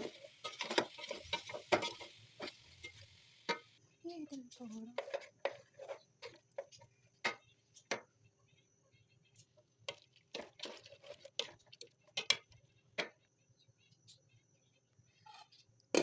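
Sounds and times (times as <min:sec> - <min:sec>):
utensils clinking against cookware: 0:00.0 - 0:03.8, 0:04.6 - 0:08.0.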